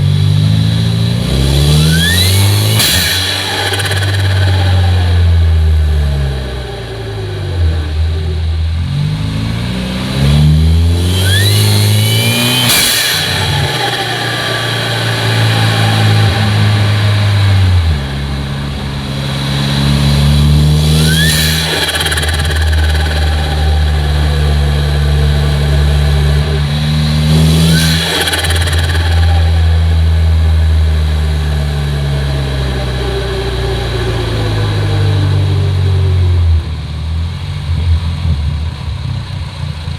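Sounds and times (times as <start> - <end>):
car engine revving: 0.0 - 39.9
rising turbo whistle: 1.7 - 7.6, 11.0 - 35.4
turbo flutter: 20.9 - 26.6, 27.4 - 30.6.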